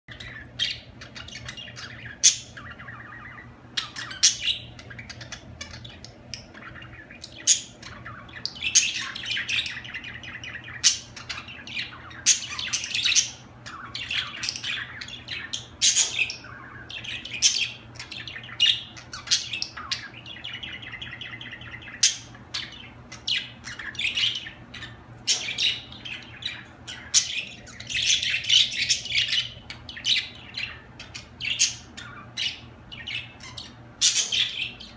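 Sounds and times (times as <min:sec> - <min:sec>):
budgerigars chattering and warbling: 0:00.1 - 0:34.9
sharp bird chirps and squawks: 0:00.1 - 0:34.9.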